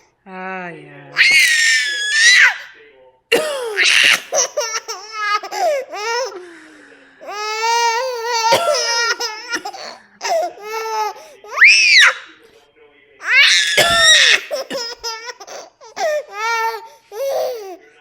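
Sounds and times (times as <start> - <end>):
baby laughing and squealing: 1.2 - 2.7, 3.8 - 6.4, 7.2 - 12.3, 13.2 - 17.8
woman coughing: 3.3 - 4.6, 8.3 - 10.5, 13.7 - 15.0.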